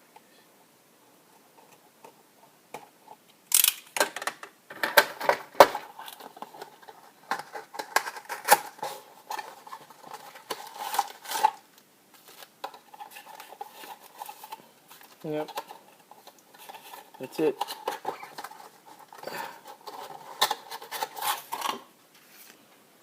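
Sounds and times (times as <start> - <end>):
box packaging being opened: 4.8 - 22.6.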